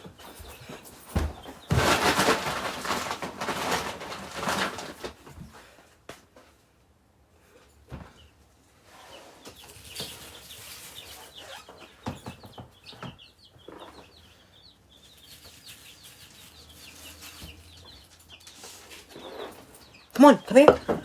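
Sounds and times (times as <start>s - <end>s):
chicks and ducklings peeping: 8.0s - 20.8s.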